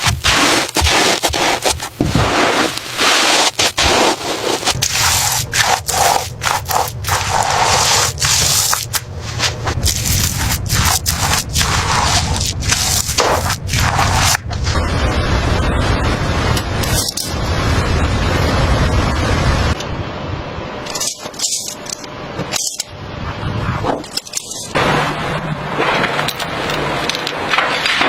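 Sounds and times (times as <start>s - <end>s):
rough scraping noise: 0.0s - 14.8s.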